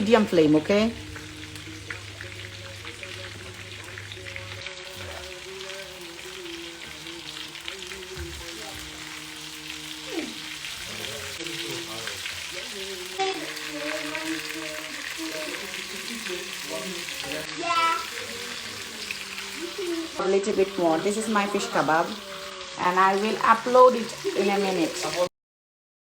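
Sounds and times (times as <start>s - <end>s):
fish sizzling in hot oil: 0.0s - 25.3s
oil crackle: 0.0s - 25.3s.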